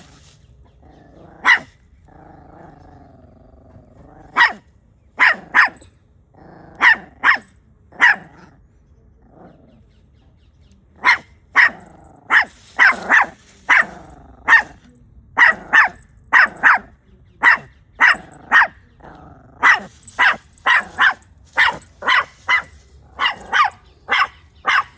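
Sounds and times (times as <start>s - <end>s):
puppy growling: 0.7s - 4.6s, 5.3s - 7.2s, 7.9s - 9.8s, 18.0s - 20.0s
puppy barking: 1.3s - 1.8s, 4.2s - 4.6s, 5.2s - 5.9s, 6.8s - 8.5s, 11.0s - 14.8s, 15.4s - 18.9s, 19.6s - 24.9s.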